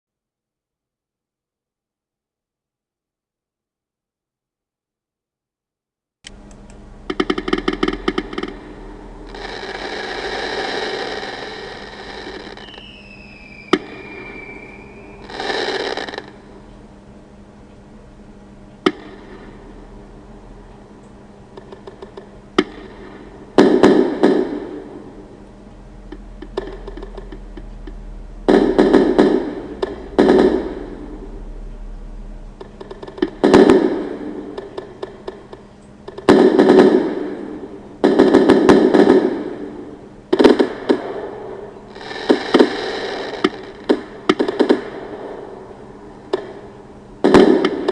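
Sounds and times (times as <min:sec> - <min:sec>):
firework bang: 0:09.2 - 0:16.4, 0:28.4 - 0:31.3, 0:32.8 - 0:35.4, 0:47.2 - 0:47.9
fireworks crackling pops: 0:09.2 - 0:16.5, 0:21.5 - 0:25.1, 0:26.1 - 0:31.1, 0:32.6 - 0:39.7, 0:40.3 - 0:45.5, 0:47.2 - 0:47.9
falling firework whistle: 0:09.3 - 0:16.4.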